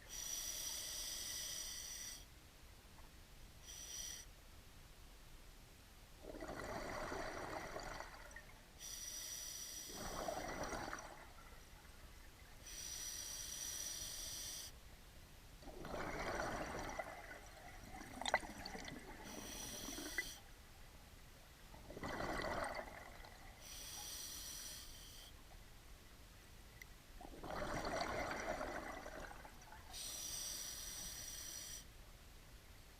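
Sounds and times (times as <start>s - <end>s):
diver breathing through regulator: 18.6s - 20.4s.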